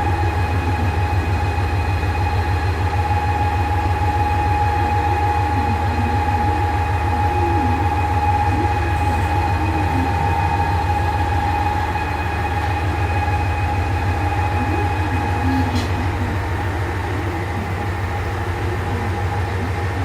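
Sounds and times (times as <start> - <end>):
diesel railcar engine running: 0.0 - 20.0.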